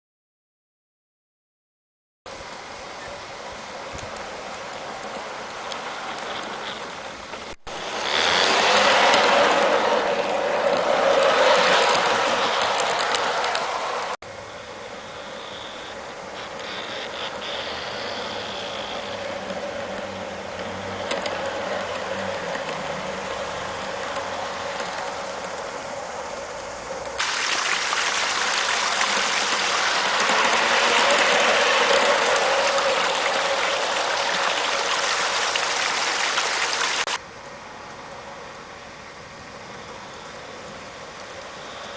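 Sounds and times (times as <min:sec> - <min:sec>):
model train motor whirring: 0:04.0 - 0:25.7, 0:28.5 - 0:36.3.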